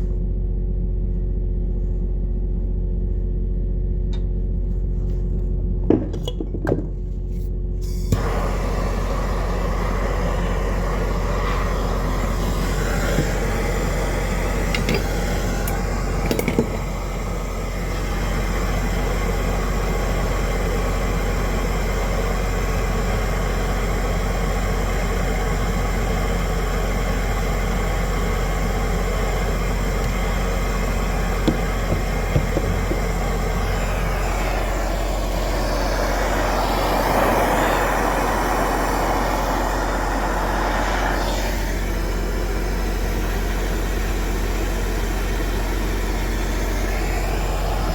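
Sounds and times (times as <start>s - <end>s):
large engine running: 0.0s - 47.9s.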